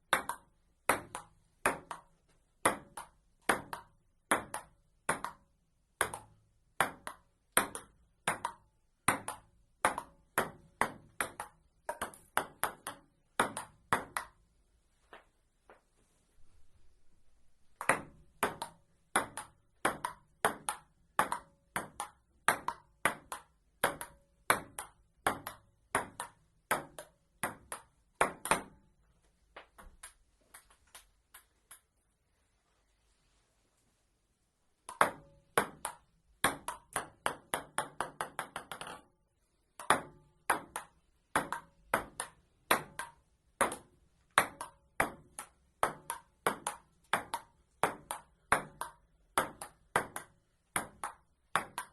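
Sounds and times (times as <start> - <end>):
ping-pong ball clicks: 0.1 - 14.4, 17.8 - 28.9, 34.9 - 39.1, 39.8 - 51.9.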